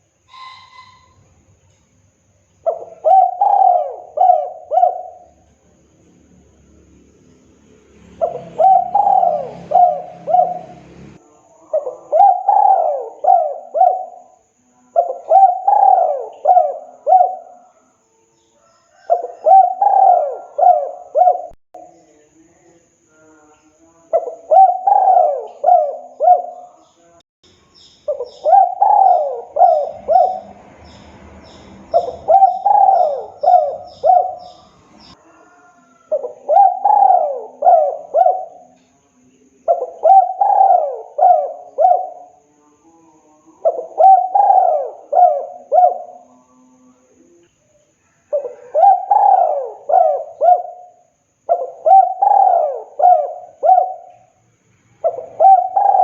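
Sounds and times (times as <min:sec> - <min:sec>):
small bird chirping: 0:00.0 - 0:56.0
dove cooing: 0:02.6 - 0:05.6, 0:08.2 - 0:17.8, 0:18.6 - 0:21.9, 0:24.1 - 0:26.9, 0:28.1 - 0:38.8, 0:39.7 - 0:42.5, 0:43.3 - 0:46.9, 0:48.2 - 0:54.4, 0:55.0 - 0:56.0.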